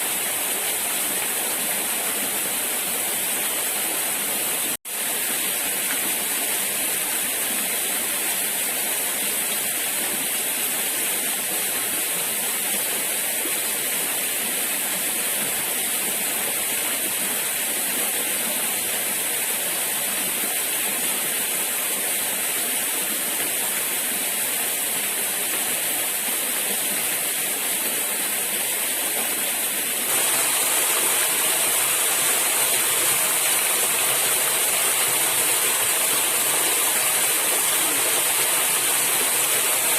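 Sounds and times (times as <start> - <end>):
river water rushing: 28.3 - 39.9.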